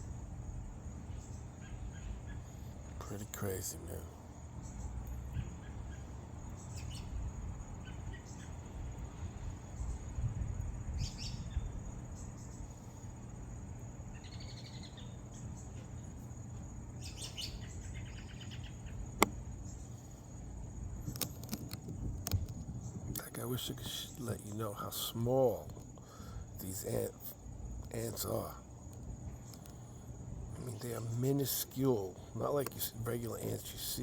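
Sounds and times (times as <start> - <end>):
high insect whine: 0.0 - 34.0
bird chirps: 4.6 - 7.2, 14.1 - 16.1, 17.0 - 20.0.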